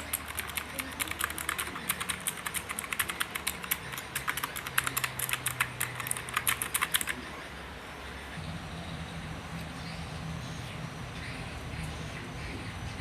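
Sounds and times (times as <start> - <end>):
mechanical keyboard typing: 0.0 - 7.2.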